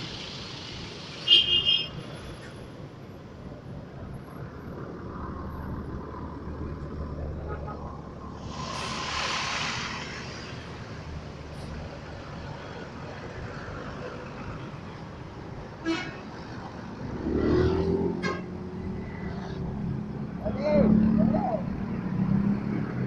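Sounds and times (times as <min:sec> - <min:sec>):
road traffic noise: 0:00.0 - 0:23.0
burst of hiss: 0:08.3 - 0:11.6
bus horn sounding loudly: 0:15.8 - 0:16.2, 0:18.1 - 0:18.5.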